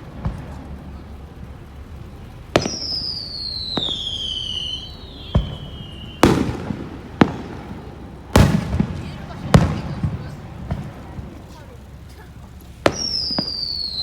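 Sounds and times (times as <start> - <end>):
firework shells bursting: 0.0 - 14.0
firework whistle falling in pitch: 2.6 - 7.5, 12.9 - 14.0.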